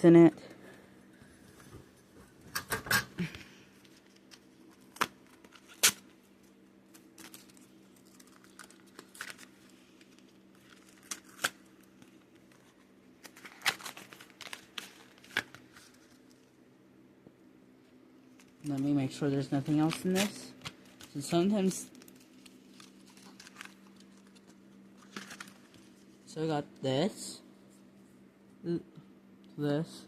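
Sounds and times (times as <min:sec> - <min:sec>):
foil wrapper tearing and crinkling: 0:03.9 - 0:06.1, 0:06.9 - 0:16.2, 0:19.9 - 0:25.9.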